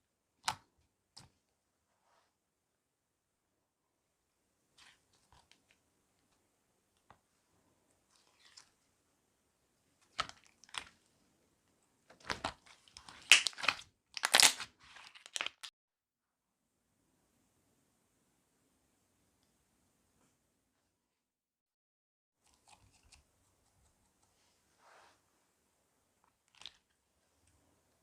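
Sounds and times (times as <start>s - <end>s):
slime crackling and popping: 12.2s - 15.7s.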